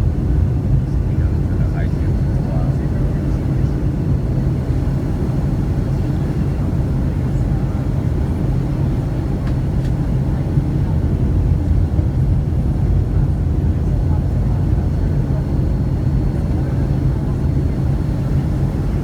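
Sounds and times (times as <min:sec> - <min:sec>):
airliner cabin rumble: 0:00.0 - 0:19.0.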